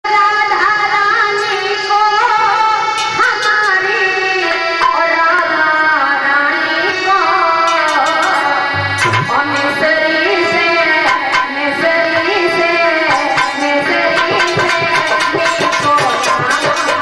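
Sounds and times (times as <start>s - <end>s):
sharp percussion strokes: 7.5s - 11.5s, 13.1s - 17.0s
sustained instrumental melody: 7.7s - 10.3s.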